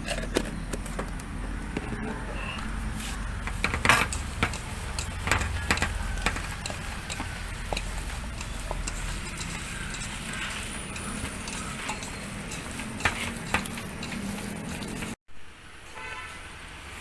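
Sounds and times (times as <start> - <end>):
cast iron pot knocks and clinks: 3.4 - 14.3.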